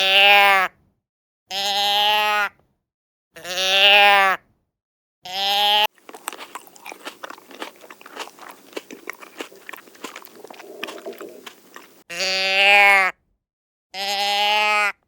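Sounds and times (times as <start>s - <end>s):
animal chewing and crunching food: 5.8s - 12.1s.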